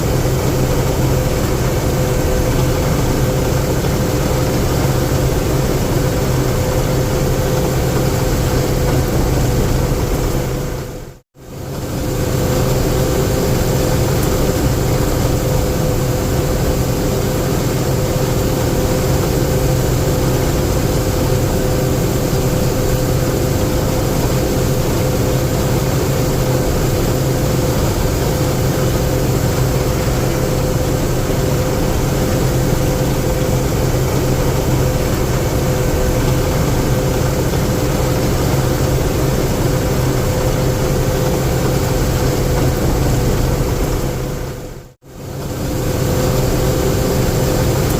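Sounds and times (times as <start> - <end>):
combine harvester engine hum: 0.0 - 47.9.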